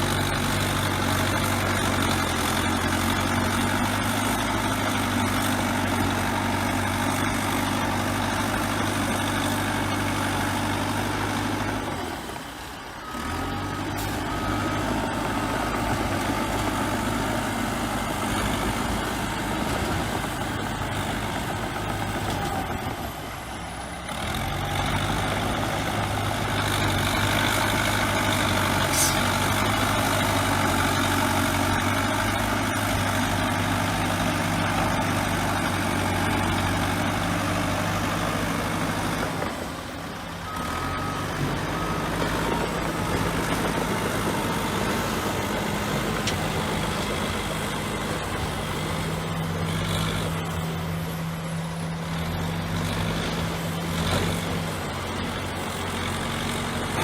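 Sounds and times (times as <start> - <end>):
bulldozer diesel engine running: 0.0 - 57.0
reversing alarm beeps: 40.5 - 45.5.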